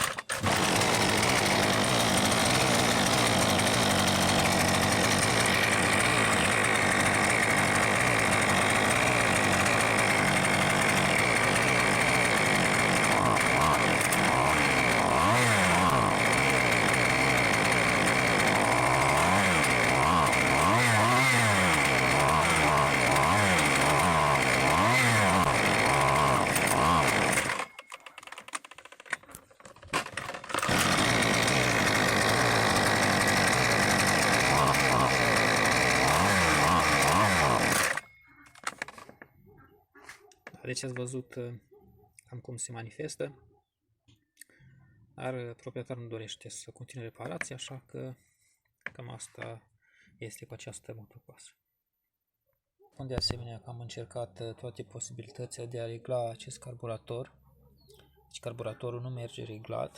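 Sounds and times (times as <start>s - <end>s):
brushcutter engine running: 0.0s - 39.1s.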